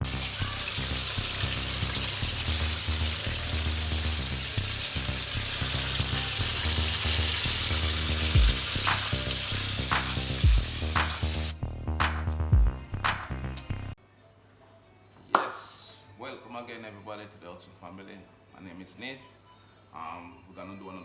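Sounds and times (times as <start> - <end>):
food sizzling in hot oil: 0.0 - 11.6
background music with bass: 0.0 - 14.0
drum hits: 8.4 - 11.3, 12.0 - 13.3.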